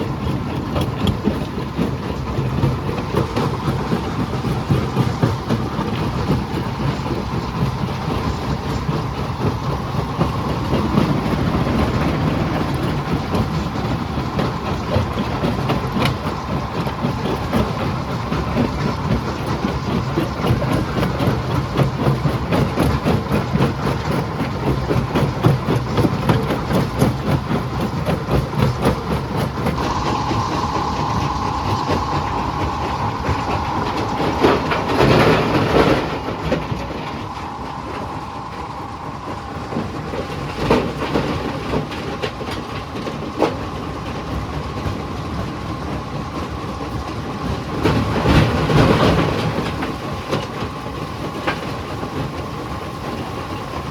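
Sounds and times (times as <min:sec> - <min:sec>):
steady high whine: 0:00.1 - 0:22.9, 0:29.1 - 0:42.5.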